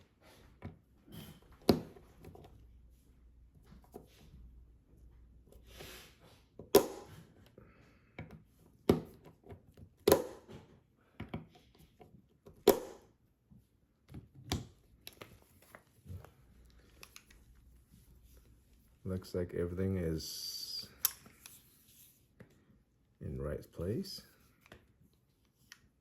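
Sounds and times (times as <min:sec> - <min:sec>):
soft handling noise: 0:13.4 - 0:26.0.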